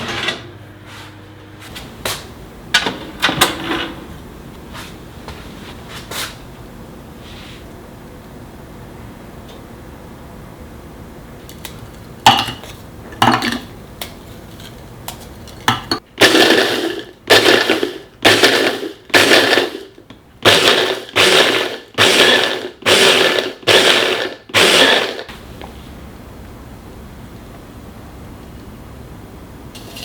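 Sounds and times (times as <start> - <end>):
blender motor pulsing: 16.2 - 25.3.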